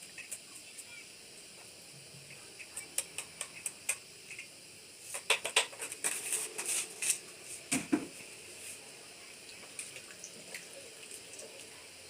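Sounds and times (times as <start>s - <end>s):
dull knock: 7.7s - 8.2s.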